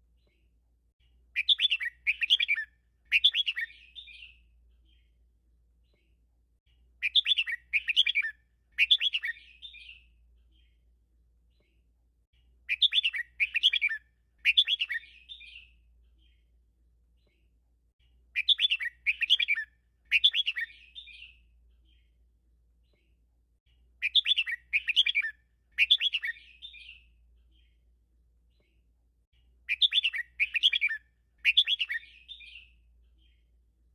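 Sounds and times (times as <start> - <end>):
bird warbling song: 1.4 - 5.2, 7.0 - 10.8, 12.7 - 16.5, 18.4 - 22.2, 24.0 - 27.8, 29.7 - 33.5.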